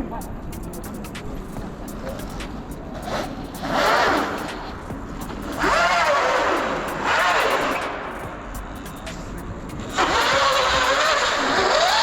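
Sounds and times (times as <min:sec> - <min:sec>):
quad bike engine revving: 0:03.1 - 0:04.8, 0:05.4 - 0:08.1, 0:09.9 - 0:12.0.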